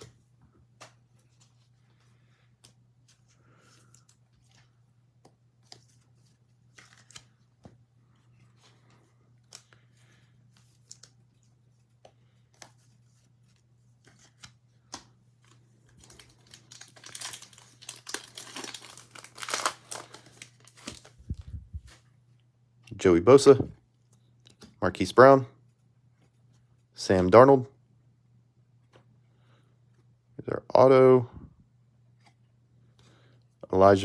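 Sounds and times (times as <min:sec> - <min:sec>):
card pack wrapper tearing and crinkling: 0:06.7 - 0:07.4, 0:14.1 - 0:21.4.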